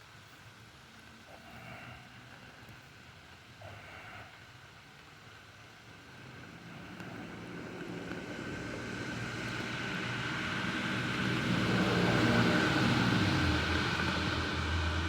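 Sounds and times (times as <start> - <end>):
engine approaching: 5.2 - 15.0.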